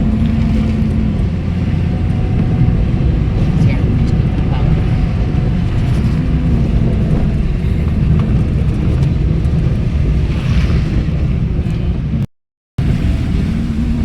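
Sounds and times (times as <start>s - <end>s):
wind buffeting microphone: 0.0s - 12.2s.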